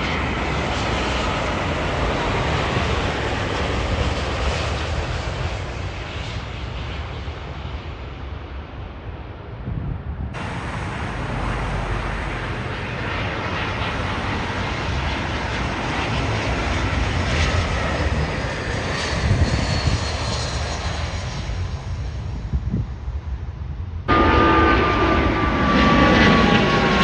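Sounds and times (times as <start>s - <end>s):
jet engines roaring overhead: 10.4s - 21.6s.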